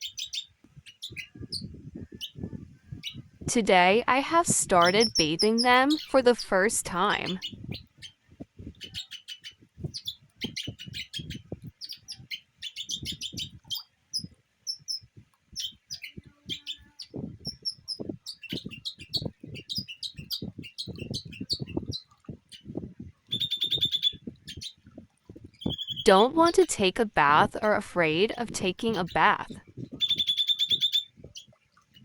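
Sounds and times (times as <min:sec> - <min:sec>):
soft low thumps: 0:00.7 - 0:03.6, 0:17.1 - 0:23.4
parrots chirping: 0:23.3 - 0:24.2, 0:25.6 - 0:26.0, 0:30.0 - 0:31.1.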